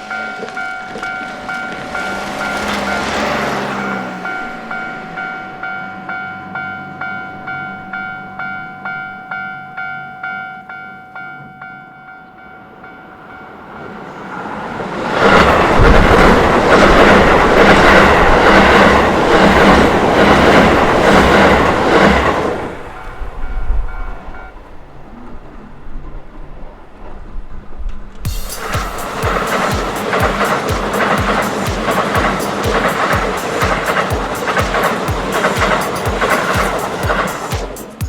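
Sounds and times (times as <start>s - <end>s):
wheels clattering over rail joints: 0.0s - 5.6s, 14.7s - 38.0s
level-crossing alarm ringing: 0.0s - 24.6s, 28.3s - 38.0s
electric train passing: 0.0s - 38.0s.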